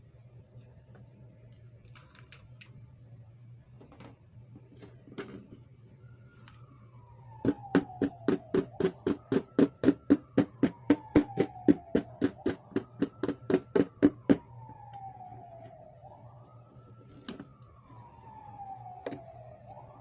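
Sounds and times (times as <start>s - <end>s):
siren-like wailing tone: 6.0s - 20.0s.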